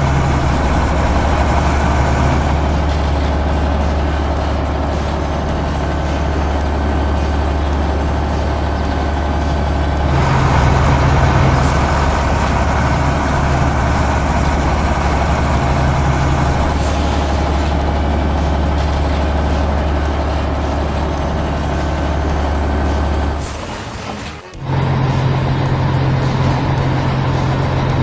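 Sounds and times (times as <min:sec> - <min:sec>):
higher hum: 0:00.0 - 0:23.7, 0:24.6 - 0:28.0
truck engine humming: 0:00.0 - 0:28.0.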